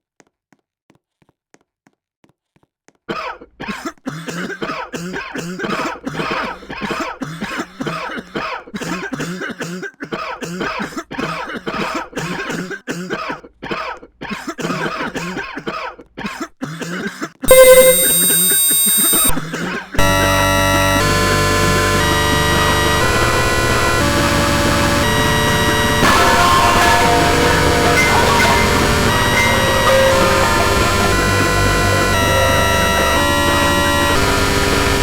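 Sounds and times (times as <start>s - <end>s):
person coughing: 3.1s - 17.5s, 19.3s - 20.0s
loud steady tone: 17.5s - 19.4s, 20.0s - 35.0s.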